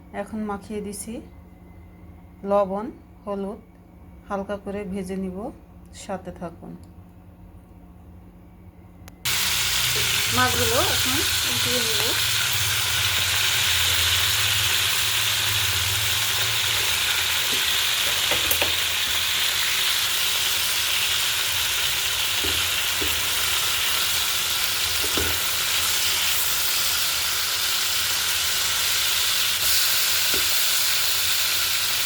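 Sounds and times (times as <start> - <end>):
fish sizzling in hot oil: 9.3 - 32.0.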